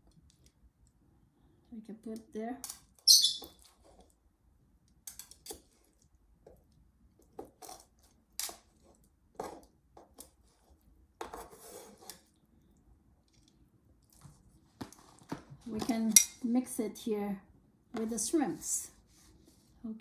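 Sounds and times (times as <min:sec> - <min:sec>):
rustling scrape: 0:10.5 - 0:12.3.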